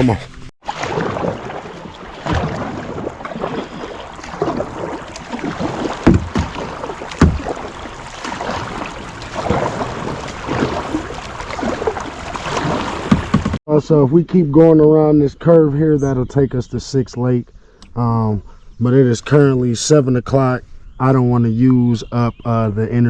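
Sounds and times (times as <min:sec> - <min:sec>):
paddle strokes splashing water: 0:00.6 - 0:13.6
low thumps: 0:00.9 - 0:13.6.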